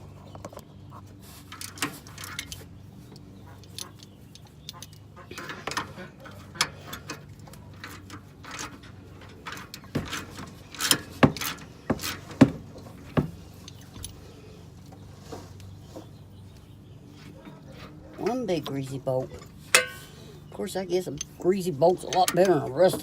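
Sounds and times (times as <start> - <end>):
metal hand tools clinking: 18.1 - 20.2.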